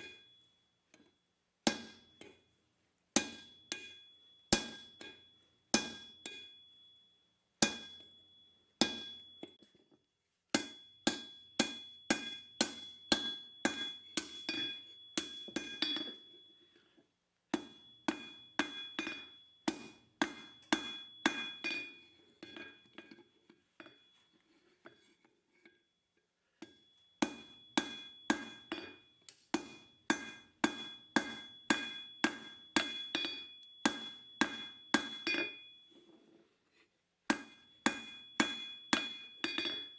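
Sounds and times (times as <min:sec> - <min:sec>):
hammer striking steel on anvil: 0:01.7 - 0:02.4, 0:03.2 - 0:06.8, 0:07.6 - 0:09.6, 0:10.6 - 0:16.4, 0:17.6 - 0:23.2, 0:26.6 - 0:35.7, 0:37.3 - 0:39.9.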